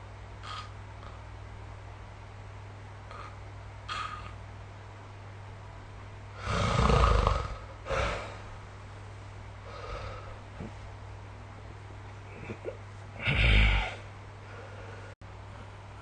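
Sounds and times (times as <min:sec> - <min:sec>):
steady low hum: 0:00.0 - 0:16.0
person snoring: 0:06.4 - 0:08.4, 0:13.2 - 0:14.1.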